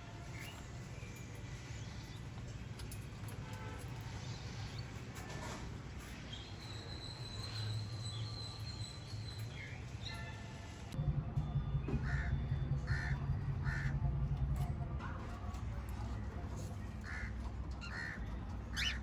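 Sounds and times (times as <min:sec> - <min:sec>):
low rumble: 0:11.0 - 0:15.2
harsh bird calls: 0:17.0 - 0:19.0.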